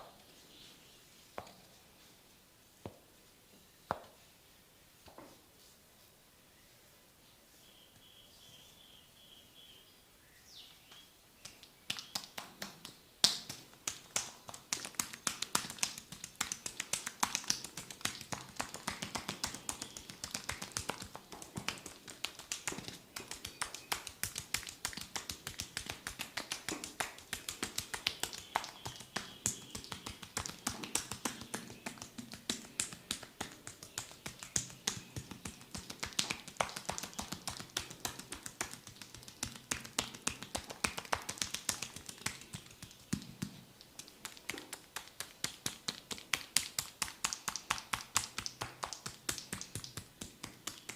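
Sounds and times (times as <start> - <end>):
massage taps and slaps: 1.4 - 1.7, 3.9 - 4.2, 10.9 - 50.9.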